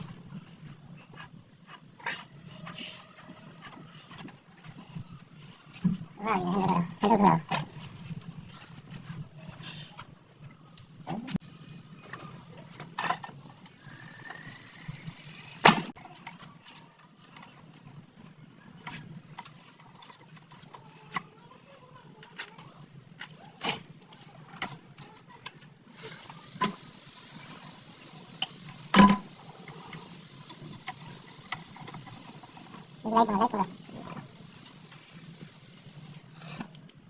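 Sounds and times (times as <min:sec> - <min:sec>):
steady hiss: 0:25.9 - 0:36.3.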